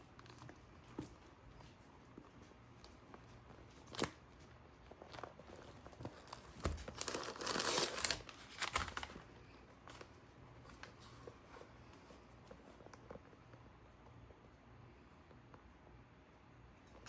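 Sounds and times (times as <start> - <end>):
packaging crinkling and tearing: 5.2 - 9.3.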